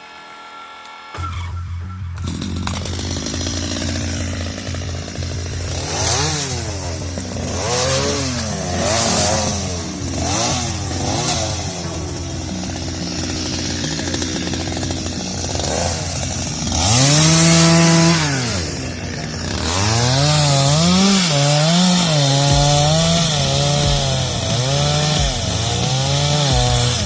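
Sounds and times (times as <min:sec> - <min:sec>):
chainsaw engine revving: 0:00.1 - 0:27.0.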